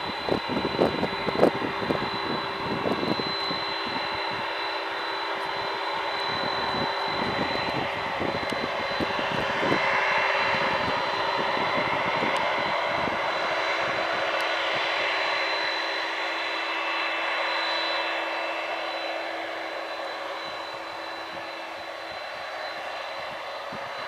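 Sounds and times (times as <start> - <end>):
wind on microphone: 0.0 - 4.5, 5.5 - 15.0
jet engines passing: 0.0 - 24.0.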